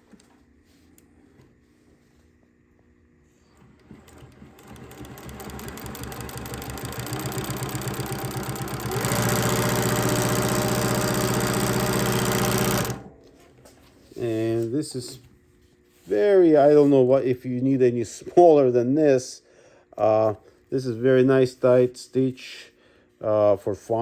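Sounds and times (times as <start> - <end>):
sewing machine stitching leather: 3.5 - 13.1.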